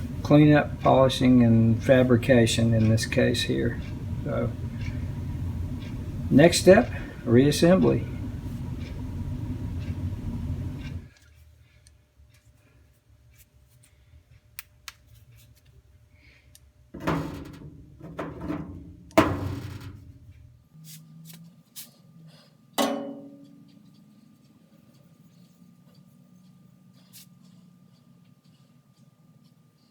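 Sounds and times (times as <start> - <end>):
metal clanks ringing: 22.8 - 23.6.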